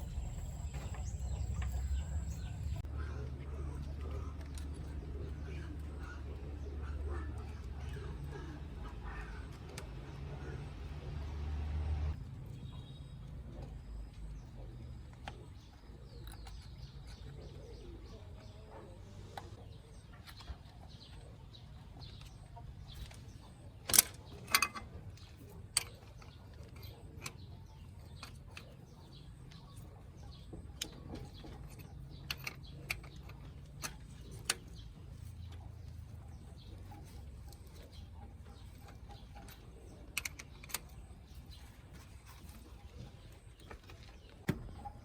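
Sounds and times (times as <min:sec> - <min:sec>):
low steady hum: 0:00.0 - 0:25.9.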